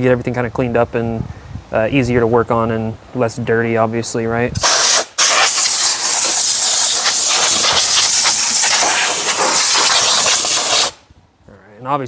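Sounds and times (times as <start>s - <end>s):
compressed air hose hissing: 4.6s - 11.0s.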